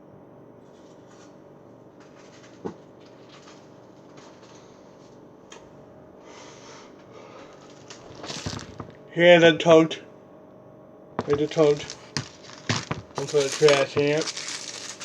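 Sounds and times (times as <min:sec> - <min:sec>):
faint hum: 0:02.9 - 0:15.0
brief rustle: 0:11.2 - 0:15.0.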